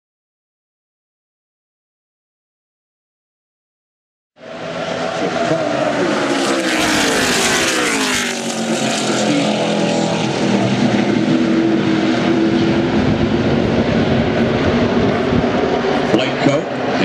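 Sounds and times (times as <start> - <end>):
race car engines running: 4.4 - 17.0
race car passing close: 4.4 - 17.0.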